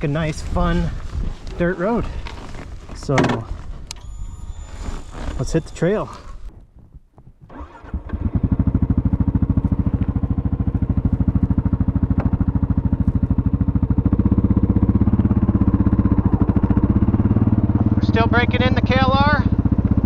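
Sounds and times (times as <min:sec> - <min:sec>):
motorcycle engine pulsing: 0:03.6 - 0:06.6, 0:07.5 - 0:20.0.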